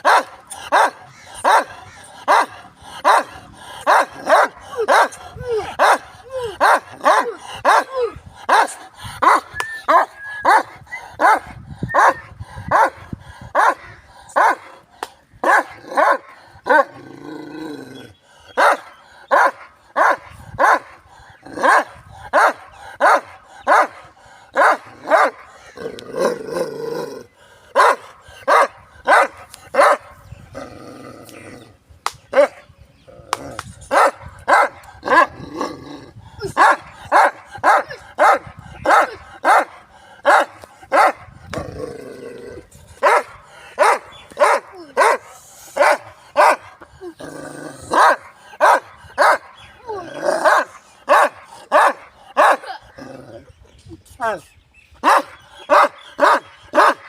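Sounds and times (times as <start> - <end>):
dog barking: 0.0 - 1.7, 2.3 - 3.3, 3.9 - 5.1, 5.8 - 6.0, 6.6 - 7.9, 8.5 - 11.4, 12.0 - 13.0, 13.6 - 13.8, 14.4 - 14.6, 15.4 - 16.9, 18.6 - 20.9, 21.6 - 24.0, 24.6 - 25.4, 27.8 - 30.1, 33.9 - 35.3, 36.6 - 41.2, 43.0 - 45.2, 45.8 - 46.7, 47.9 - 49.5, 50.4 - 52.7, 55.0 - 57.0.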